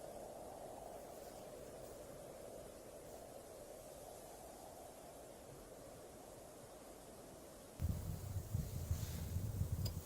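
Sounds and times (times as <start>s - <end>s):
faint steady hiss: 0.0s - 10.0s
wind buffeting the microphone: 7.7s - 10.0s.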